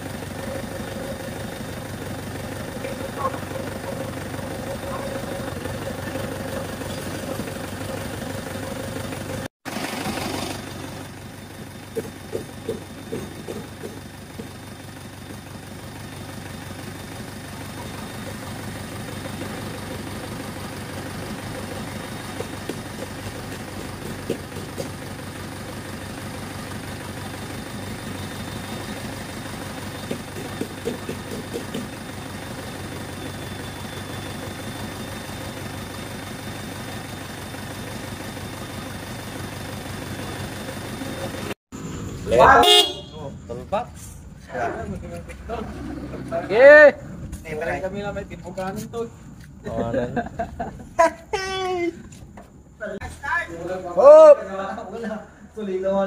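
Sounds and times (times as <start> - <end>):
diesel engine idling: 0.0 - 56.0
sharp engine clacks: 11.5 - 15.5, 20.8 - 25.2, 27.0 - 32.7.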